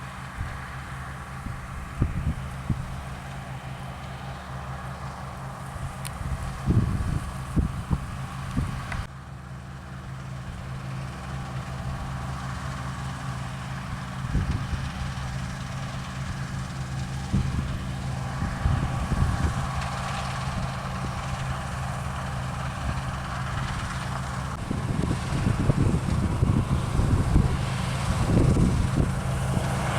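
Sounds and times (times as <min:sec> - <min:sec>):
diesel engine running: 0:00.0 - 0:29.9
wind buffeting microphone: 0:01.4 - 0:03.2, 0:05.7 - 0:09.1, 0:14.2 - 0:15.1, 0:17.2 - 0:21.5, 0:24.5 - 0:29.9.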